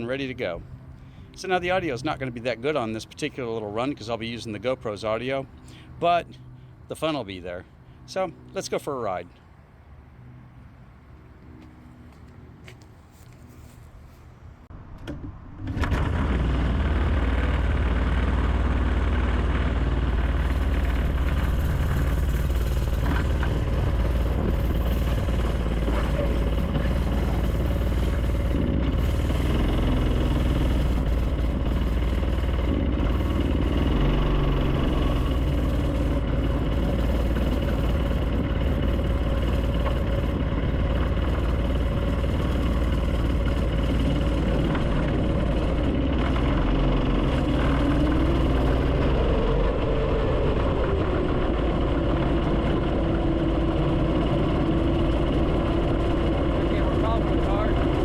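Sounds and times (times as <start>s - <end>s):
small engine running: 15.7s - 58.0s.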